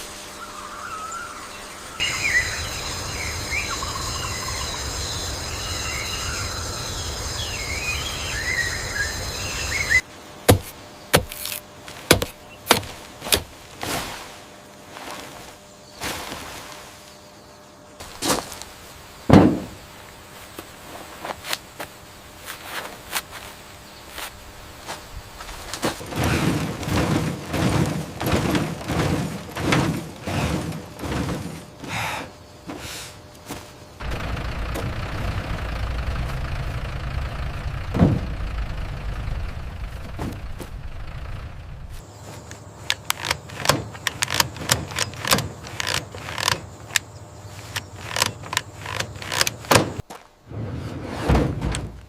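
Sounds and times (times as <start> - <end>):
machine thump: 19.3 - 19.8, 37.8 - 38.7
machinery clattering: 25.8 - 31.8, 34.0 - 42.0.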